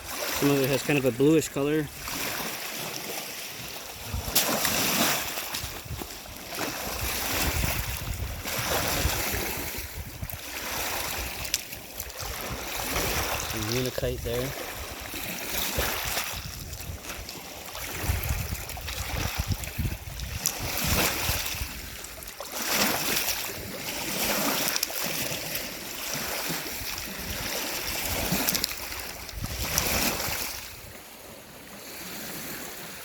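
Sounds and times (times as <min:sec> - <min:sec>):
waves washing onto rocky shore: 0:00.0 - 0:33.0
wind rumbling on microphone: 0:03.6 - 0:24.7, 0:26.1 - 0:31.1.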